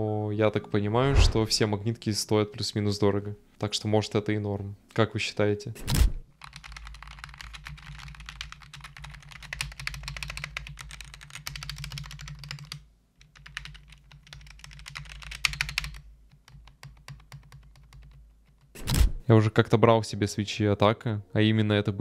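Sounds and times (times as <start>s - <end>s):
fast keyboard typing: 6.4s - 18.7s.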